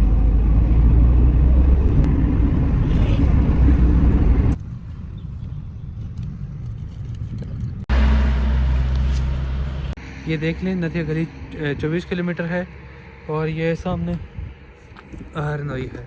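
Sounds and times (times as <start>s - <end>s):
car road rumble from inside: 0.0s - 4.6s, 7.8s - 10.0s.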